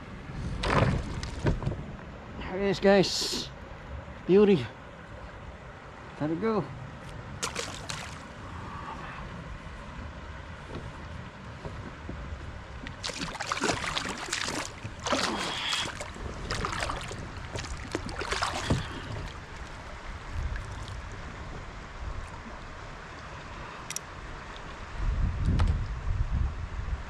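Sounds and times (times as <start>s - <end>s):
wind rumble on microphone: 0.0s - 2.5s, 6.7s - 27.0s
water splashing beside kayak: 7.4s - 8.5s, 12.5s - 22.4s.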